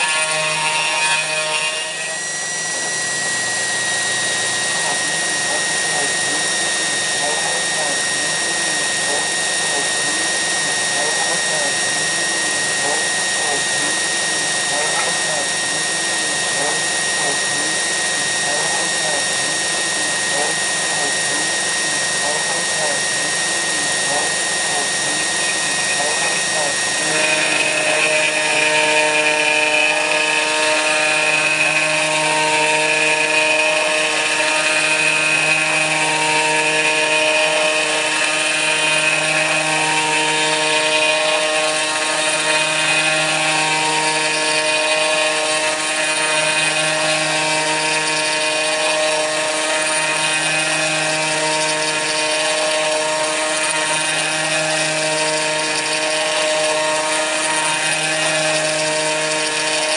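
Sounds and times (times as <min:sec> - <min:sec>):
high whine: 0:00.0 - 0:59.9
router spindle milling metal: 0:00.0 - 0:59.9.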